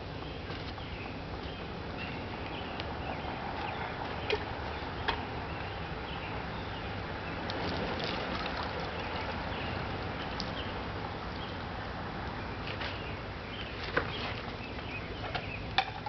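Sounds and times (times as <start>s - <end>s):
water rushing from spout: 7.4s - 12.2s.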